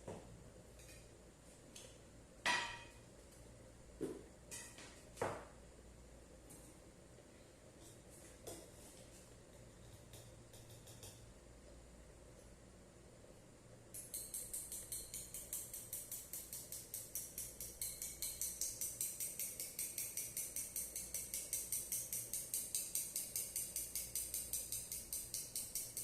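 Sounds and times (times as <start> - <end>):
hand whisk beating in a bowl: 14.0 - 26.0.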